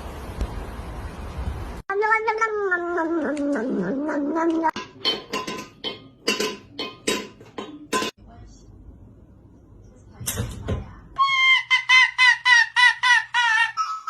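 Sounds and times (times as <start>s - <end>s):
cat yowling: 1.9s - 4.8s.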